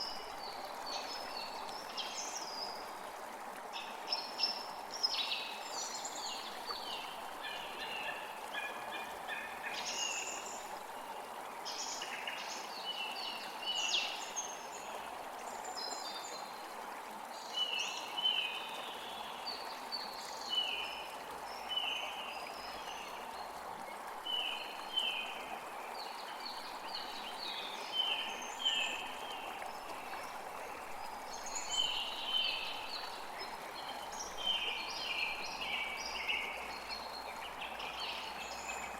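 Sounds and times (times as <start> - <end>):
running water: 0.0 - 38.9.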